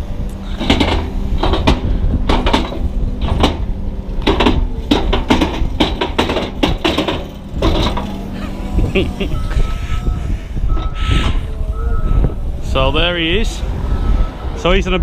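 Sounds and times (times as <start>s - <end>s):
diesel engine humming: 0.0s - 15.0s
irregular clunks and knocks: 0.5s - 8.4s.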